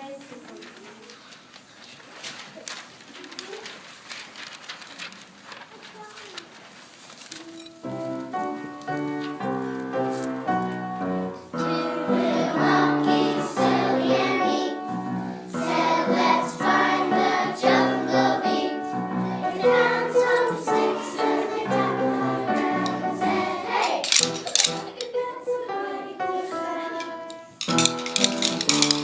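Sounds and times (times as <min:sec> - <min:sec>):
song with choir singing: 0:11.5 - 0:27.6.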